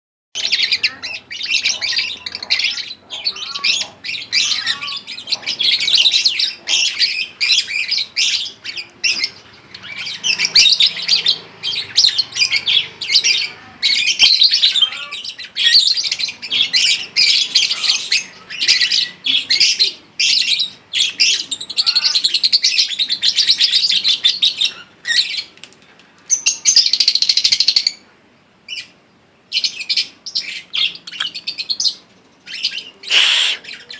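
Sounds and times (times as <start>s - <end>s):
lovebird chattering: 30.8s - 31.8s, 32.5s - 33.9s.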